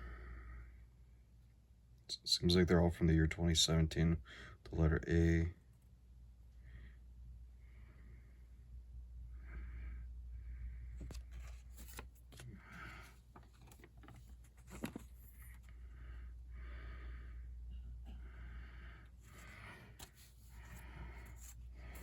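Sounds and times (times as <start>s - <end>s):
paper banknotes rustling: 11.0s - 15.6s, 19.3s - 22.0s.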